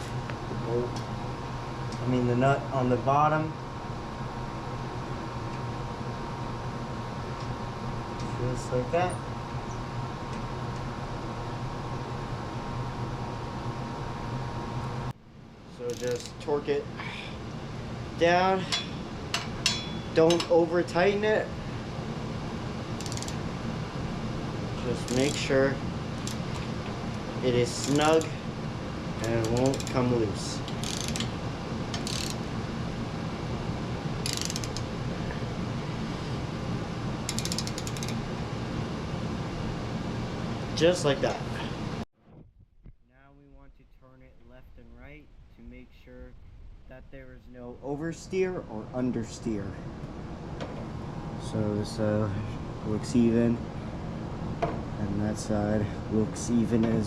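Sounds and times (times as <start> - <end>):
fan-like appliance humming: 0.0 - 57.0
ratchet wrench clicking: 15.9 - 16.4, 23.0 - 23.4, 25.0 - 25.5, 26.2 - 26.6, 27.7 - 28.4, 29.2 - 30.0, 30.7 - 31.3, 31.9 - 32.4, 34.2 - 34.9, 37.3 - 38.2.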